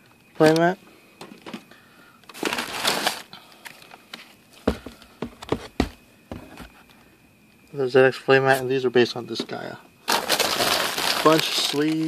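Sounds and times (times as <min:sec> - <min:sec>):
packaging rustling: 0:02.3 - 0:03.3, 0:10.1 - 0:12.0.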